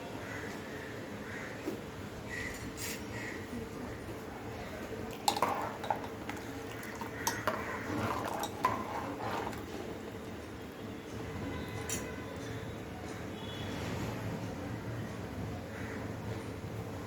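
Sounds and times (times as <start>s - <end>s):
metal utensil clinking on cookware: 5.1s - 9.9s.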